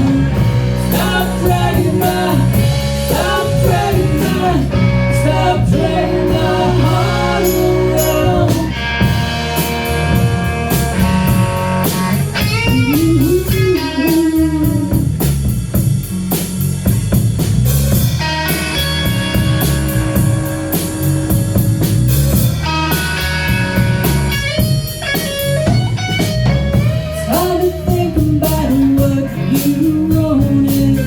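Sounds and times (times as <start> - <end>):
lead guitar bending notes: 0.0 - 15.2
blues-rock band playing: 0.0 - 31.0.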